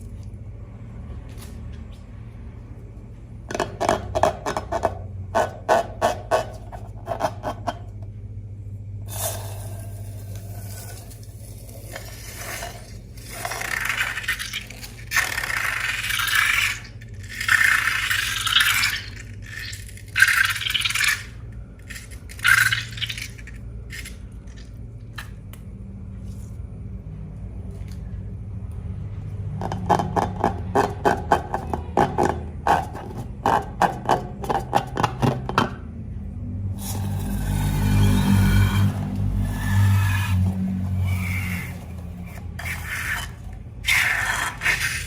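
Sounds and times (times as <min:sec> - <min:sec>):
slime scraping: 0:09.1 - 0:24.8, 0:36.8 - 0:45.0.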